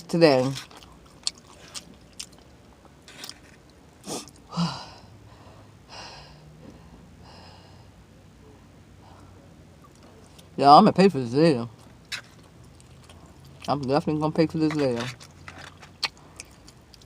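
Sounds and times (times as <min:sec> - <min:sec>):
person chewing with wet smacks: 0:00.4 - 0:04.5, 0:09.8 - 0:10.5, 0:11.8 - 0:14.1, 0:15.2 - 0:17.0
person breathing out heavily: 0:04.1 - 0:08.0.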